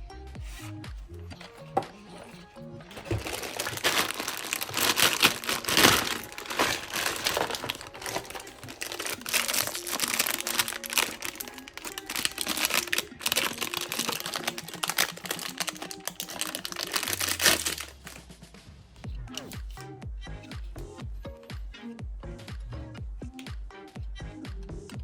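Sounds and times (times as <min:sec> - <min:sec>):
packaging wrap crinkling: 0:01.4 - 0:18.2.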